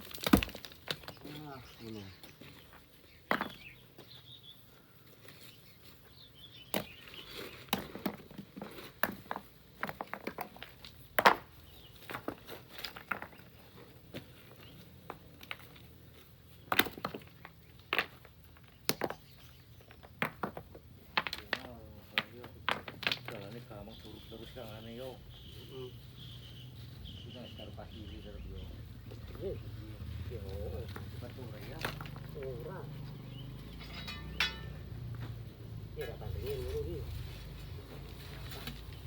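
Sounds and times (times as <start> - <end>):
stones and pebbles clattering: 0.0 - 3.7, 6.8 - 24.0, 30.8 - 32.6.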